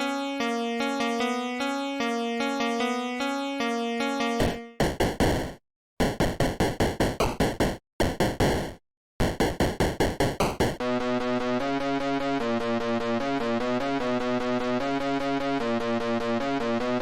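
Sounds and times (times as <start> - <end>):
synthesizer repeated-note pattern: 0.0 - 10.8
rapid sharp hits: 4.4 - 10.8.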